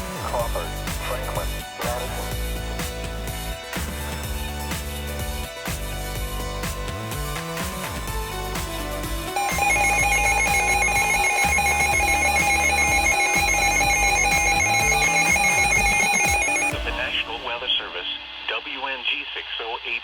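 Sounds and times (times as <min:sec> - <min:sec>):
music: 0:00.0 - 0:20.0
warbling electronic alert tone: 0:09.4 - 0:16.8.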